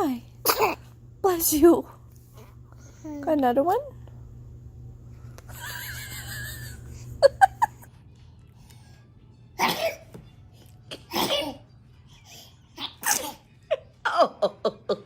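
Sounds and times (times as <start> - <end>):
baby sneezing: 0.4 - 0.8, 9.6 - 10.1, 10.9 - 11.6, 12.8 - 13.5.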